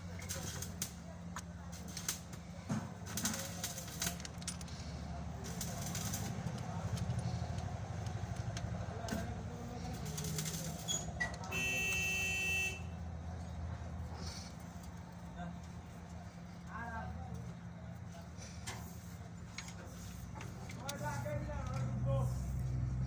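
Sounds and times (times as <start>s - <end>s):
diesel engine running: 0.0s - 23.0s
sharp clicks and knocks: 5.4s - 9.4s
vehicle horn: 11.4s - 13.0s.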